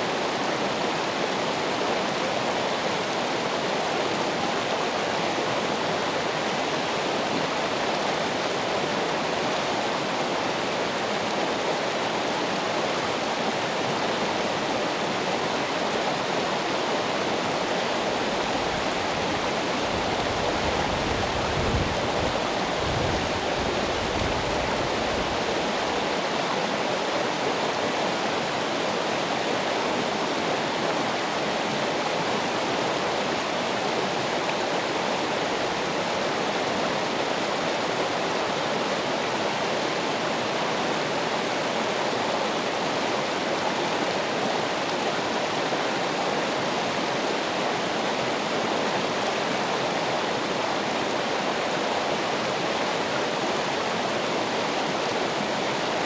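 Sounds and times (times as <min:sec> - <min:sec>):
running water rushing: 0:00.0 - 0:56.0.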